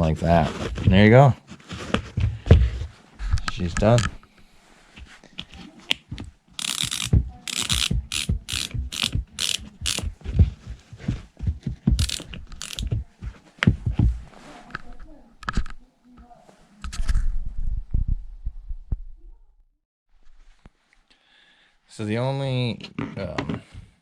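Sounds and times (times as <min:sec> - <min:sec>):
ratcheting dial clicking: 0:06.6 - 0:10.1, 0:12.0 - 0:12.9.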